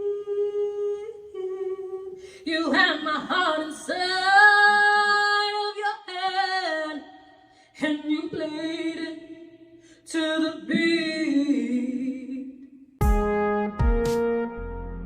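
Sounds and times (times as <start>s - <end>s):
person singing long notes: 0.0s - 2.9s.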